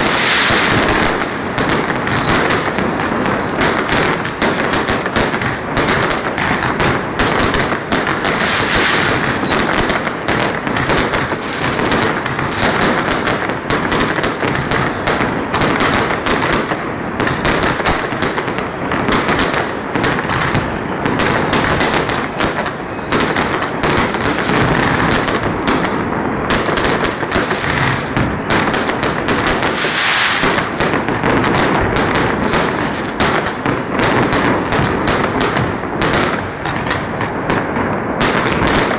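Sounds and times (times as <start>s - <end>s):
high falling whistles: 0.0s - 4.8s, 7.8s - 13.3s, 14.9s - 16.2s, 33.5s - 35.4s
fireworks and firecrackers bursting: 0.0s - 38.9s.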